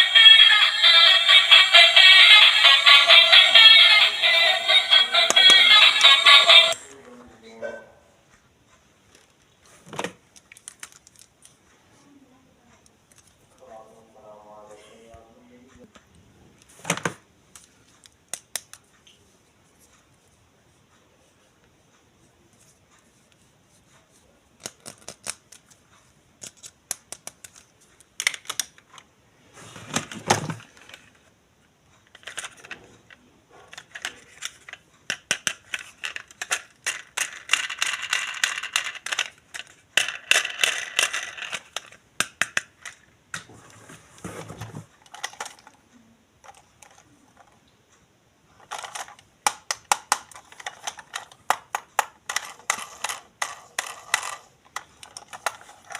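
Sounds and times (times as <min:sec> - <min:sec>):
toy packaging clicks and taps: 0:05.2 - 0:06.3, 0:10.3 - 0:11.6, 0:16.9 - 0:18.9, 0:24.6 - 0:25.8, 0:26.4 - 0:29.1, 0:32.0 - 0:32.8, 0:33.7 - 0:43.1, 0:45.0 - 0:45.8, 0:48.6 - 0:55.9.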